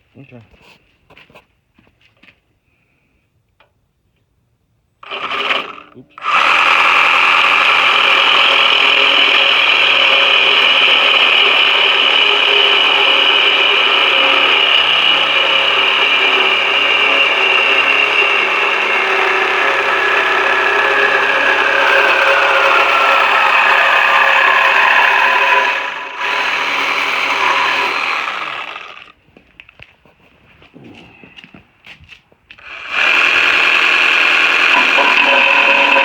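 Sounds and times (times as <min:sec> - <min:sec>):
power tool cutting metal: 0:05.0 - 0:29.1, 0:32.6 - 0:36.0.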